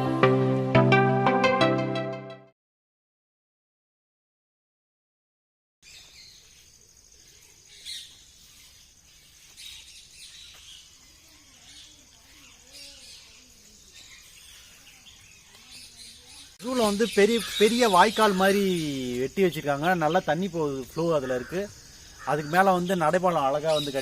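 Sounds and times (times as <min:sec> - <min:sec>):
birds chirping: 0:05.8 - 0:24.0
high insect trill: 0:05.8 - 0:24.0.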